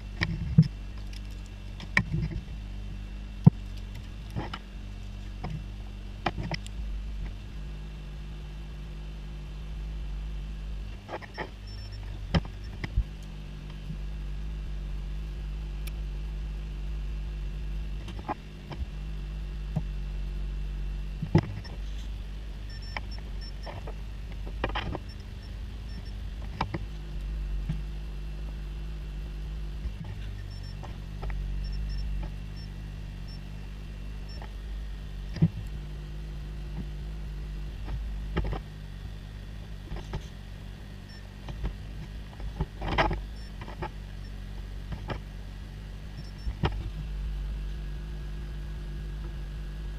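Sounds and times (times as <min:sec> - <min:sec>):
low electrical hum: 0:00.0 - 0:49.9.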